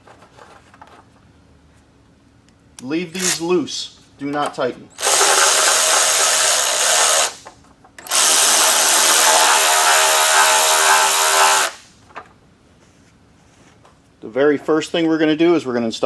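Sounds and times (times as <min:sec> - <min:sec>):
cordless drill driving bolts: 0:05.0 - 0:11.9.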